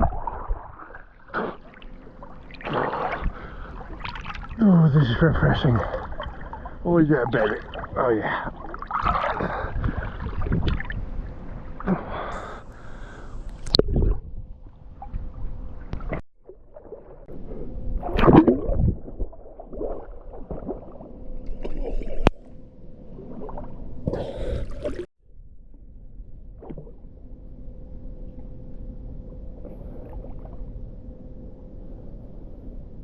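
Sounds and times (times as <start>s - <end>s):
water splashing around swimmer: 0.0s - 4.6s, 5.4s - 11.0s.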